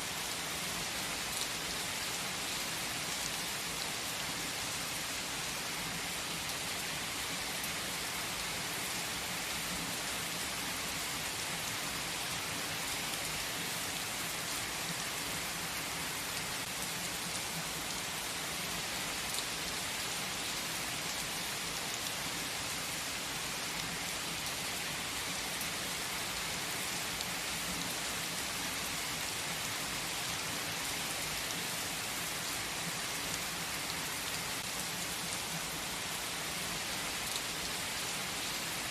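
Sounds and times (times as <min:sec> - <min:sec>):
rain falling: 0:00.0 - 0:38.9.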